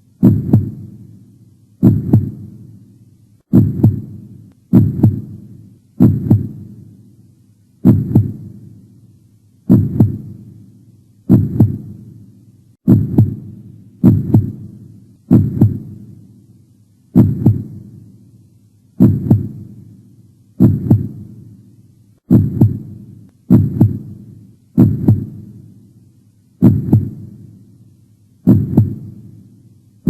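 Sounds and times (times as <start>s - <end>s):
heartbeat thumps: 0.2s - 1.0s, 1.8s - 2.6s, 3.5s - 6.8s, 7.8s - 8.6s, 9.7s - 10.4s, 11.3s - 12.0s, 12.8s - 16.0s, 17.1s - 17.9s, 19.0s - 19.7s, 20.6s - 21.4s, 22.3s - 25.6s, 26.6s - 27.3s, 28.4s - 29.2s.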